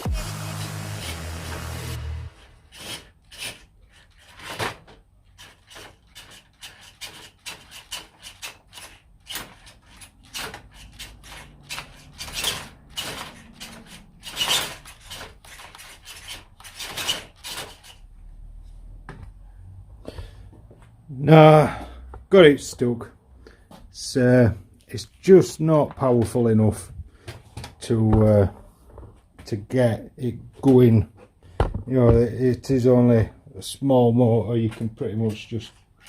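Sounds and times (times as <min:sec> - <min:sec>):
toy car scraping over rough ground: 0:02.5 - 0:04.7, 0:05.4 - 0:18.1.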